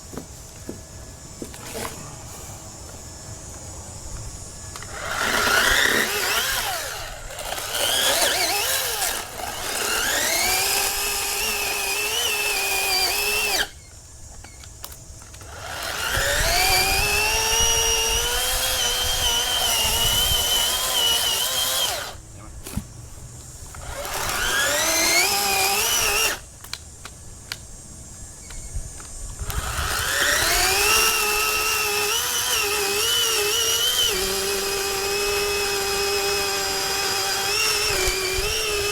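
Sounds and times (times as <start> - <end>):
electric chainsaw motor whining: 1.4 - 22.7, 23.6 - 26.6, 28.4 - 38.9.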